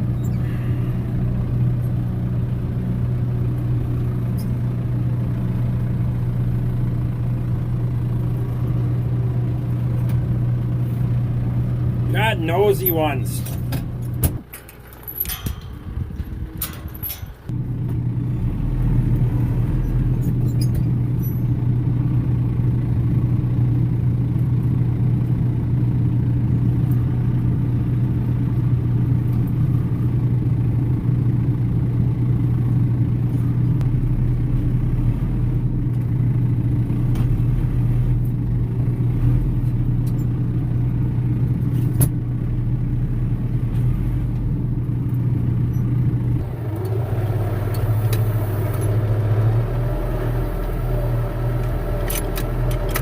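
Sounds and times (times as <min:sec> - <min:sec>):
vehicle engine droning: 0:00.0 - 0:53.0.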